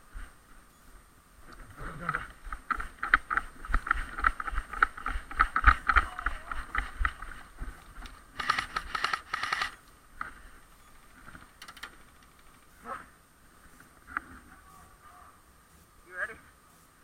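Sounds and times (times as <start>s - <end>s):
sharp rustling clatter: 2.0s - 13.0s.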